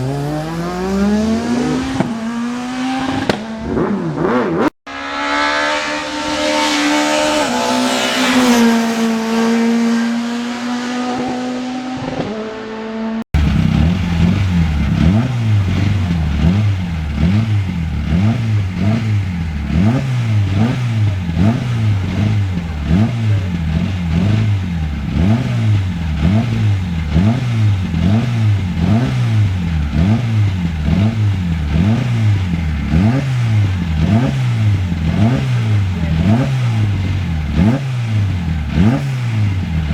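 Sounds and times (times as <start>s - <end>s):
racing car engine revving: 0.0s - 39.9s.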